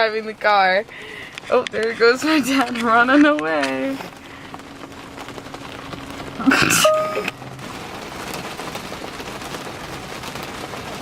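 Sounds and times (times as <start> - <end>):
rain pattering on car roof: 0.0 - 11.0
electronic beep: 6.6 - 7.4.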